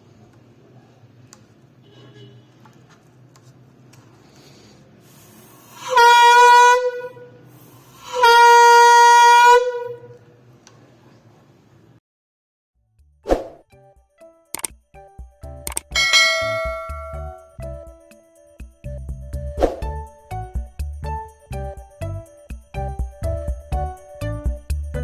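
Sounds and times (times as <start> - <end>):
homemade horn blasts: 5.7 - 10.2, 16.0 - 17.5.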